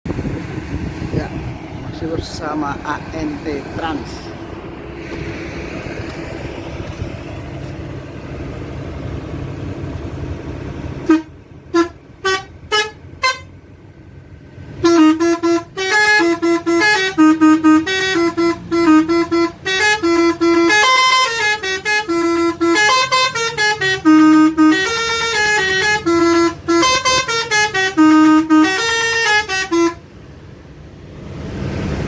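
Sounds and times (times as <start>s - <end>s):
steady noisy running sound: 0.1s - 11.7s
air horn melody: 11.0s - 13.5s, 14.8s - 30.0s
air horn toots: 11.0s - 13.6s, 14.8s - 30.0s.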